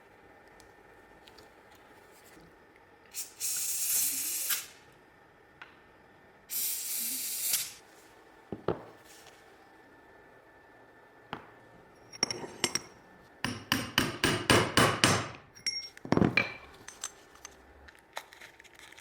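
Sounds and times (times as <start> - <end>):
aerosol can spraying: 3.2 - 4.7, 6.5 - 7.8.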